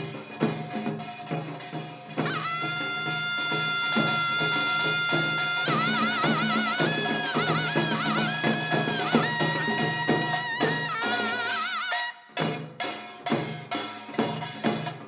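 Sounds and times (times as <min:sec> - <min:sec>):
drum strikes: 0:00.0 - 0:15.0
reedy wind instrument: 0:02.2 - 0:12.6.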